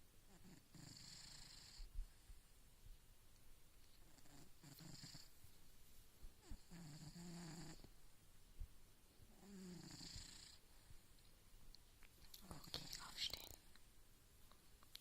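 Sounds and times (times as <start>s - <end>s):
cat snoring: 0.3s - 1.9s, 4.0s - 5.3s, 6.4s - 7.9s, 9.3s - 10.7s.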